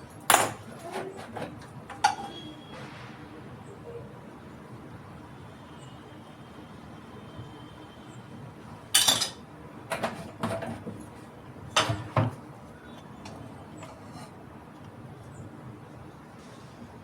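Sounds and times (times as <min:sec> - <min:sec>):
utensils clinking against cookware: 0:00.3 - 0:02.4, 0:09.0 - 0:10.7.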